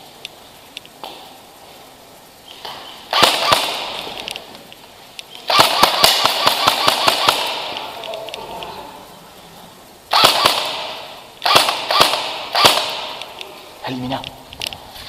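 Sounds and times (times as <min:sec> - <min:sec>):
airsoft guns firing: 0:02.6 - 0:04.6, 0:05.3 - 0:08.3, 0:10.1 - 0:13.6.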